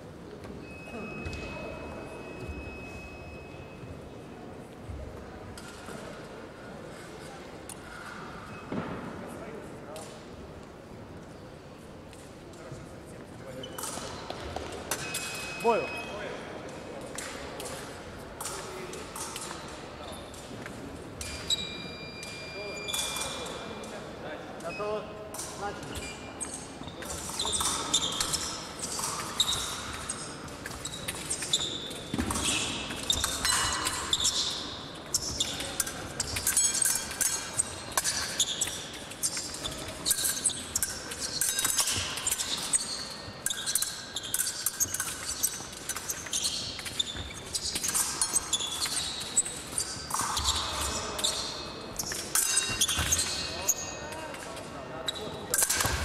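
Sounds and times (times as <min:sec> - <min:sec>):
shoe squeaks and stamps: 0:25.9 - 0:54.1.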